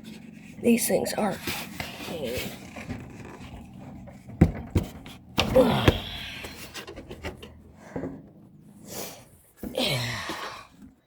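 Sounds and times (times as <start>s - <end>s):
person grunting: 5.5s - 6.6s, 9.7s - 10.8s.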